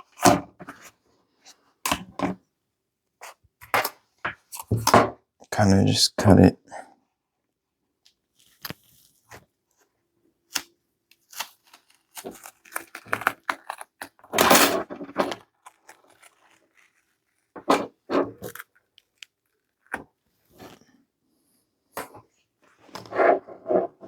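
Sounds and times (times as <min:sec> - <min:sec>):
material tearing: 0:10.5 - 0:20.9.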